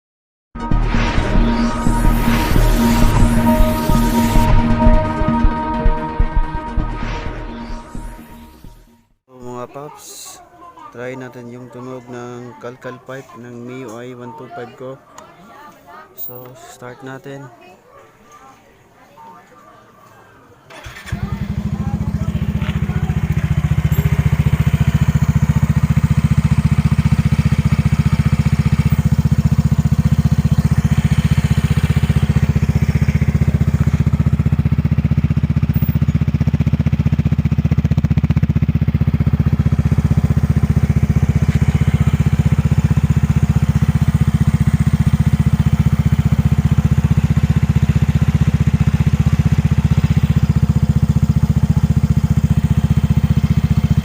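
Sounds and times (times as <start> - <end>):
scooter engine idling: 20.7 - 54.0.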